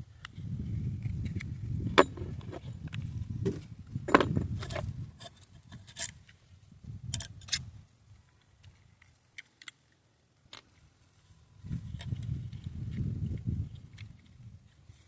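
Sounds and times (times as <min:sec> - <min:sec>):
pistol parts clicking and scraping: 0:01.0 - 0:06.4, 0:07.1 - 0:07.7, 0:08.4 - 0:10.9.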